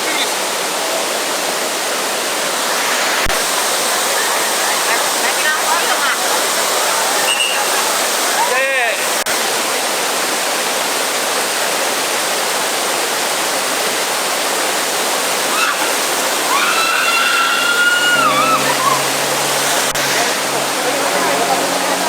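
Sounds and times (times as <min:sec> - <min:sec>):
waterfall rushing: 0:00.0 - 0:22.0
long high-pitched call: 0:16.5 - 0:22.0.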